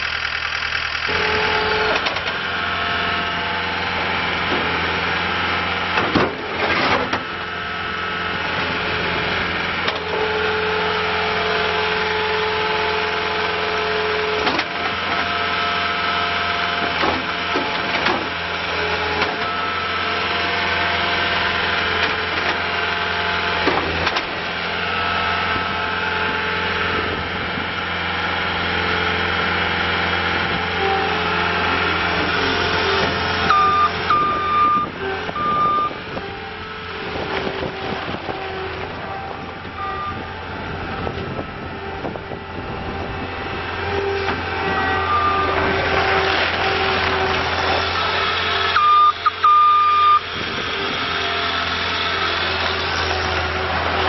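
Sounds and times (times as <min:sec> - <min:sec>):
diesel engine running: 0:00.0 - 0:54.0
reversing alarm beeping: 0:33.4 - 0:36.0, 0:39.8 - 0:40.3, 0:44.9 - 0:45.6, 0:48.0 - 0:50.3.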